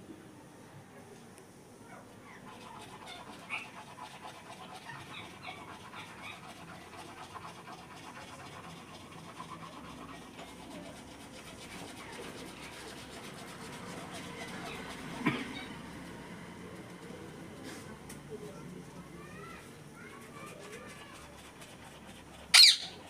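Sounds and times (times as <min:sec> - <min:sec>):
parakeet chattering: 0:22.5 - 0:23.0
parakeet high chirps: 0:22.5 - 0:23.0.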